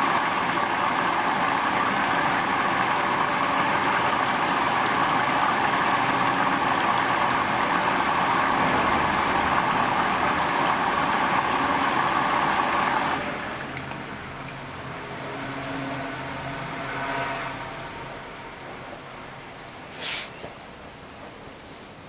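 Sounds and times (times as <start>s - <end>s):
water filling washing machine: 0.0s - 16.4s.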